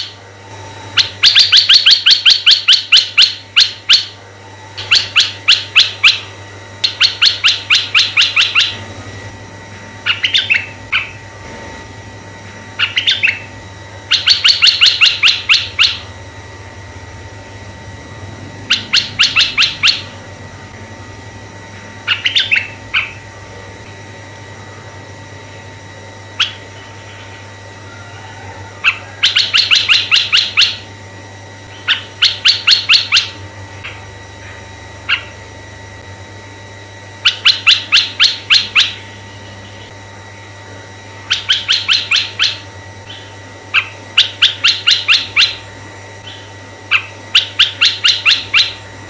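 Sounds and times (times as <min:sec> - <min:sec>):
faint steady hum: 0:00.0 - 0:49.0
bulbul chattering calls: 0:01.0 - 0:04.1, 0:04.8 - 0:08.8, 0:10.1 - 0:11.2, 0:12.8 - 0:13.4, 0:14.1 - 0:16.1, 0:18.7 - 0:20.2, 0:22.1 - 0:23.2, 0:28.8 - 0:30.8, 0:31.7 - 0:33.4, 0:35.1 - 0:35.4, 0:37.2 - 0:39.0, 0:41.3 - 0:45.6, 0:46.2 - 0:48.8.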